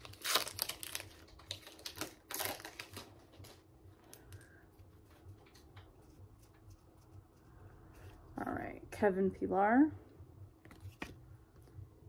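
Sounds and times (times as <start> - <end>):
card pack wrapper crinkling: 0.0 - 3.6.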